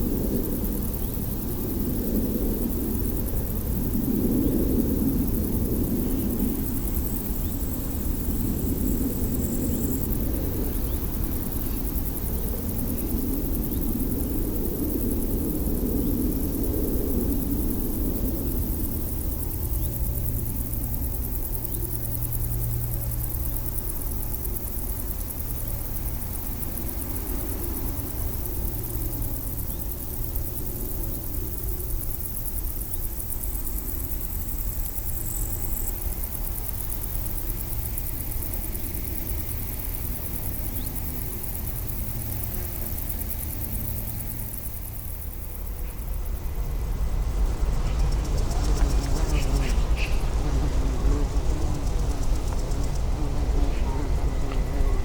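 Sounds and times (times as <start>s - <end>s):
faint hum: 0.0s - 55.0s.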